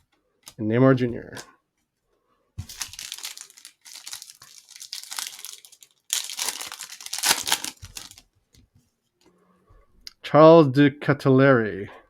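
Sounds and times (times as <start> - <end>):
wrapper tearing and crinkling: 2.6 - 8.2.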